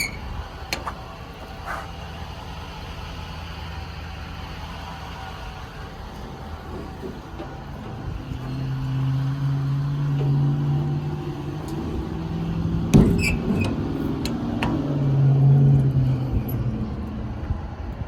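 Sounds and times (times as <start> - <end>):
diesel engine running: 0.0 - 18.0.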